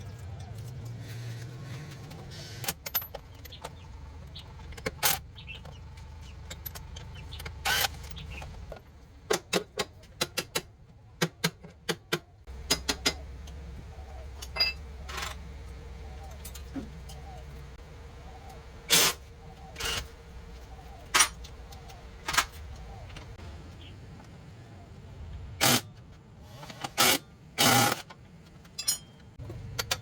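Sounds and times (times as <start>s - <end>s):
low steady hum: 12.4s - 30.0s
metal tools clinking: 14.2s - 17.4s, 21.0s - 23.3s, 26.9s - 30.0s.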